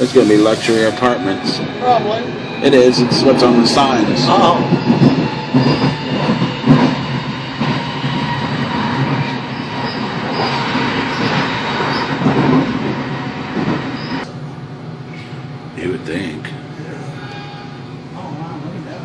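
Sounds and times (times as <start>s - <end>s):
high wheel squeals: 0.0s - 14.3s, 17.2s - 18.0s
train rolling noise: 0.0s - 19.0s.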